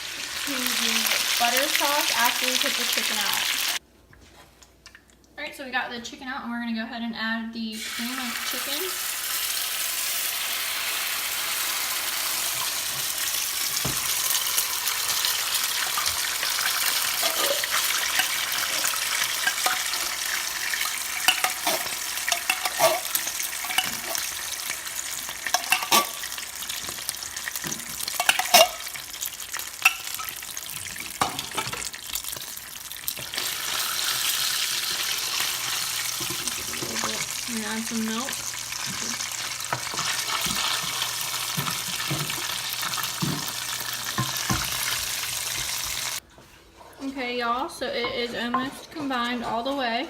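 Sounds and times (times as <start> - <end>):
sauce sizzling in a pan: 0.0 - 3.8, 7.8 - 46.2
utensil scraping a pan: 14.0 - 24.6, 27.6 - 29.0.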